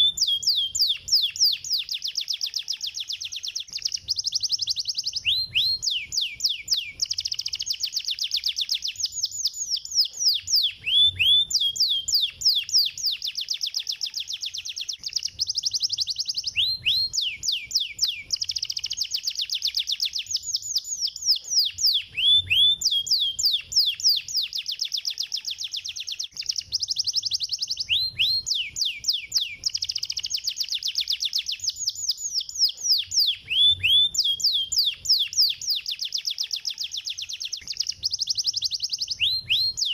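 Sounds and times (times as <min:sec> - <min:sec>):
canary singing trills: 0:00.0 - 0:39.9.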